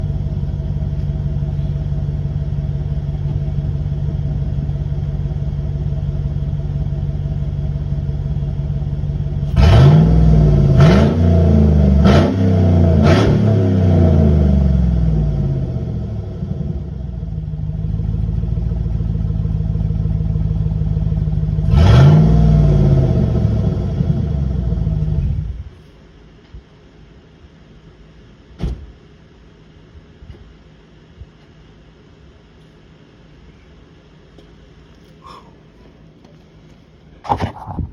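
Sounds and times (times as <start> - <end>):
truck engine idling loudly: 0.0 - 12.0, 13.8 - 25.6
engine revving: 9.4 - 17.0, 20.4 - 25.6.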